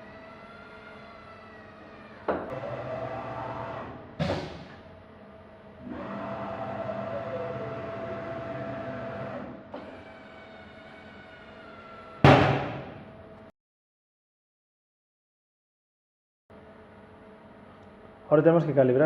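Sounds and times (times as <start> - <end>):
motor whine with falling tone: 0.0 - 3.9, 5.8 - 12.3.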